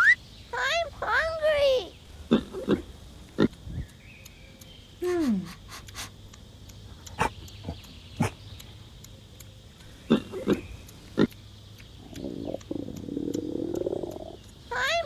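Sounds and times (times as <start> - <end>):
animal whining: 10.1 - 11.3, 12.0 - 15.0.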